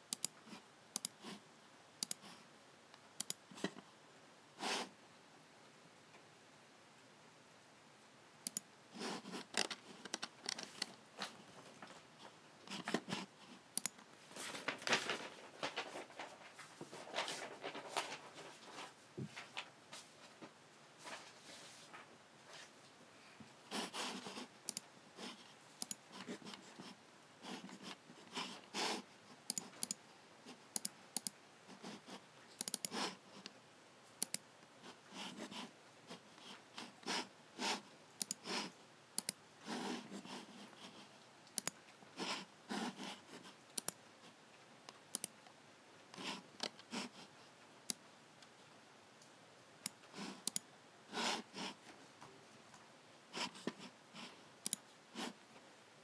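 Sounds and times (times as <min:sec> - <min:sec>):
computer mouse buttons clicking: 0:00.1 - 0:00.4, 0:01.0 - 0:01.2, 0:02.0 - 0:02.3, 0:03.2 - 0:03.7, 0:08.4 - 0:08.7, 0:09.3 - 0:11.0, 0:13.8 - 0:14.1, 0:24.6 - 0:24.9, 0:25.8 - 0:26.6, 0:29.5 - 0:30.0, 0:30.7 - 0:31.4, 0:32.6 - 0:33.5, 0:34.2 - 0:34.4, 0:38.2 - 0:38.5, 0:39.2 - 0:39.4, 0:41.5 - 0:41.8, 0:43.8 - 0:44.0, 0:45.1 - 0:45.4, 0:49.8 - 0:50.7, 0:54.6 - 0:54.8
soft scuffing sounds: 0:14.3 - 0:22.9.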